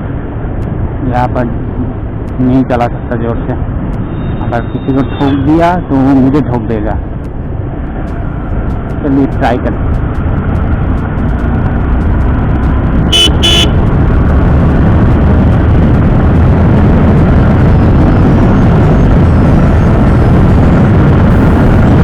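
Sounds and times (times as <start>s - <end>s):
wind rushing over microphone: 0.0s - 22.0s
vehicle horn beeps: 13.1s - 13.8s.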